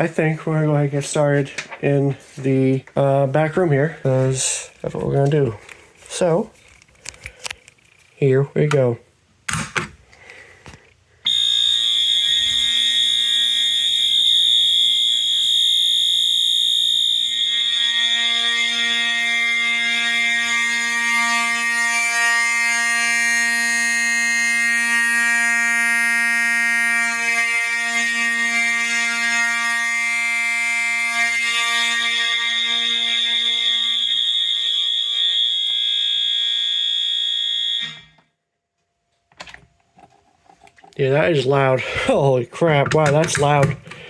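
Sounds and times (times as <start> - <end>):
fire alarm horns sounding: 11.3 - 38.9.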